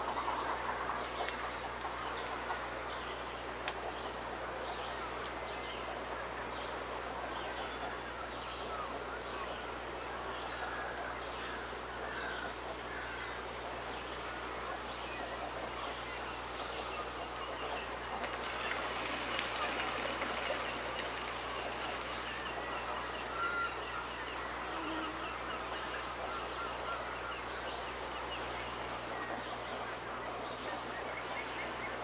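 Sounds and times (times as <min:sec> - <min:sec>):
constant background hiss: 0:00.0 - 0:32.0
birds chirping: 0:14.0 - 0:32.0.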